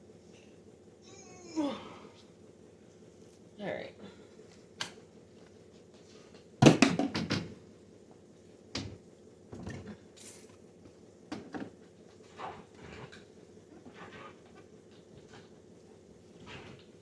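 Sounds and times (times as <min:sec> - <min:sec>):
bottles knocking in a refrigerator: 0:06.6 - 0:07.6.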